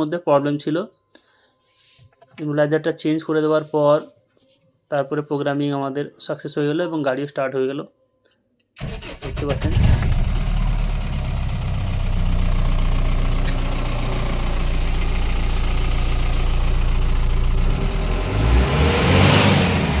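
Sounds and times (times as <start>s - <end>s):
diesel engine idling: 8.8s - 20.0s.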